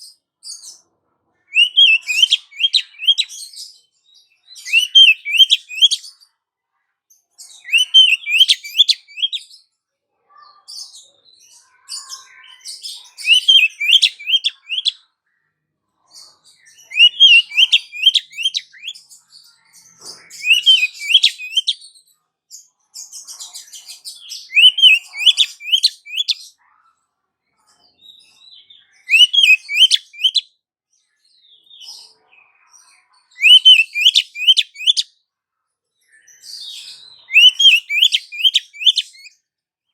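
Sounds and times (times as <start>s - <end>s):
soft scratchy bird chatter: 0.0s - 30.4s
bird whistled notes: 1.5s - 3.2s, 4.6s - 6.0s, 7.7s - 9.4s, 13.2s - 14.9s, 16.9s - 19.0s, 20.4s - 21.8s, 24.5s - 26.4s, 29.1s - 30.4s, 33.4s - 35.0s, 37.3s - 39.3s.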